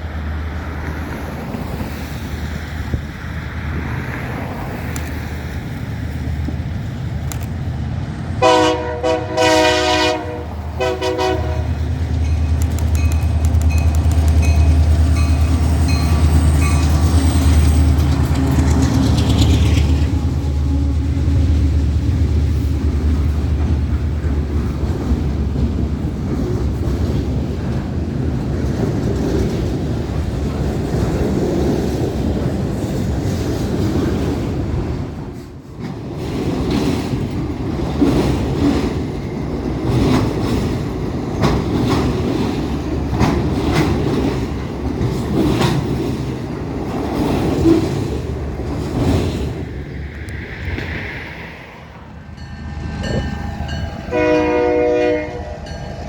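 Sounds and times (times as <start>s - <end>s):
wheels clacking over rail joints: 8.5s - 51.0s.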